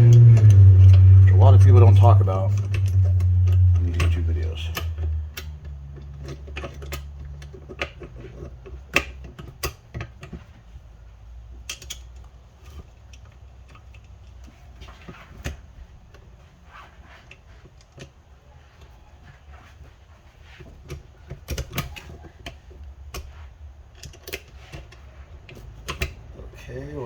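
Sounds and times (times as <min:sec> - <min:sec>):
faint low hum: 0:00.0 - 0:08.5.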